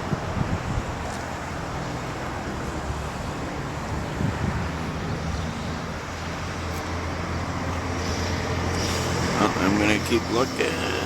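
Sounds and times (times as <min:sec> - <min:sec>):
wind on microphone: 0:00.0 - 0:01.3, 0:03.9 - 0:06.0
low vehicle rumble: 0:00.0 - 0:11.0.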